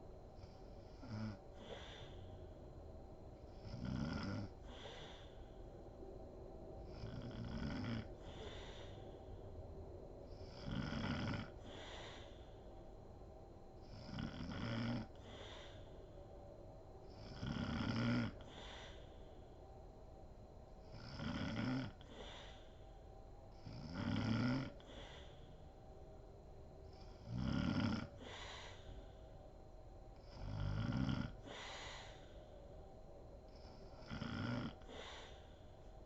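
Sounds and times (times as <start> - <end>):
woman snoring: 0.4 - 2.3, 3.5 - 5.4, 6.8 - 9.0, 10.3 - 12.6, 13.8 - 16.0, 17.0 - 19.3, 20.9 - 22.8, 23.6 - 25.6, 26.9 - 29.0, 30.2 - 32.4, 33.5 - 35.7
breathy exhale: 1.5 - 2.6, 4.6 - 5.7, 8.1 - 9.5, 11.5 - 12.7, 15.1 - 16.2, 18.4 - 19.6, 22.0 - 23.1, 24.8 - 25.7, 28.1 - 29.4, 31.4 - 32.7, 34.8 - 35.9.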